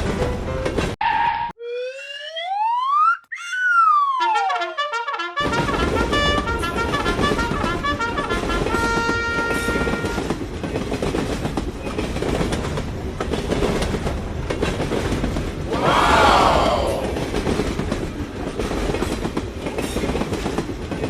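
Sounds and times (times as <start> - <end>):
train rumble with wheel clatter: 0.0 - 1.0, 5.4 - 15.8, 16.9 - 21.0
train horn bending: 4.8 - 10.2.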